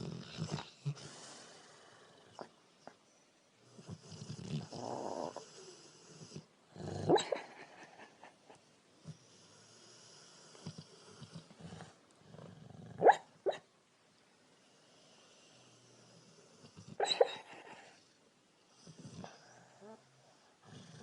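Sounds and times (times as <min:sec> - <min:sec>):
dog grunting in sleep: 0:00.0 - 0:02.5, 0:03.7 - 0:07.4, 0:09.9 - 0:13.1
dog yelping and yipping: 0:17.0 - 0:17.4.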